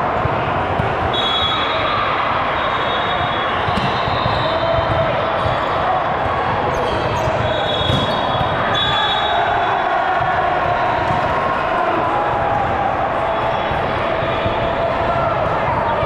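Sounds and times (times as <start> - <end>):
crowded hall din: 0.0 - 16.0
sneakers squeaking on court floor: 6.7 - 9.0.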